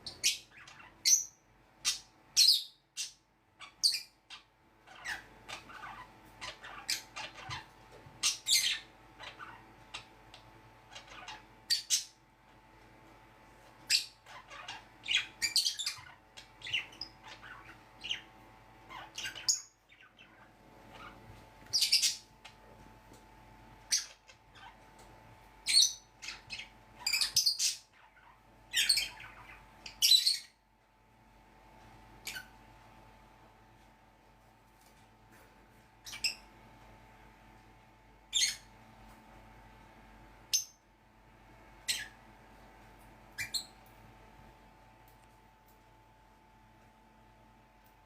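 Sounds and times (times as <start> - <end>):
birds squawking and chirping: 0.0 - 12.2, 13.8 - 22.6, 23.8 - 25.0, 25.6 - 30.6, 32.2 - 32.6, 36.0 - 36.5, 38.3 - 38.8, 41.8 - 42.2, 43.3 - 43.8.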